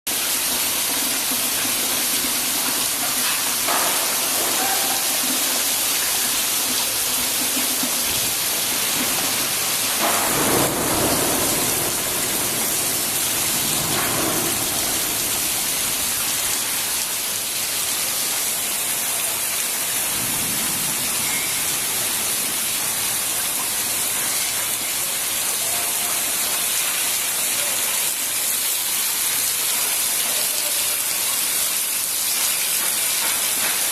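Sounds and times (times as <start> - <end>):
rain falling: 0.1 - 33.9
low rumbles: 10.0 - 17.0.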